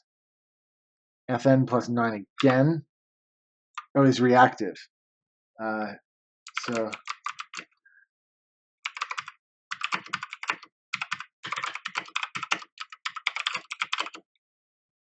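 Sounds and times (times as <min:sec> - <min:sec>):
clicky mechanical keyboard typing: 0:02.4 - 0:02.6, 0:06.5 - 0:07.7, 0:08.9 - 0:14.2.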